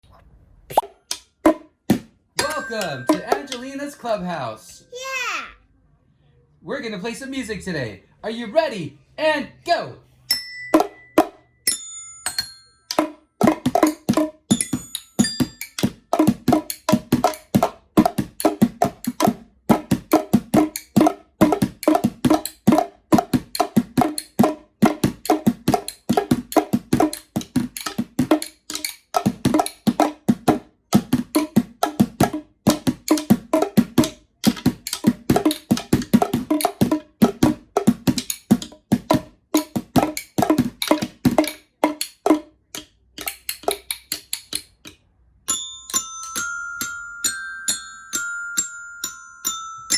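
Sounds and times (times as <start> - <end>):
bongos struck rapidly: 0.7 - 4.2, 12.9 - 44.8.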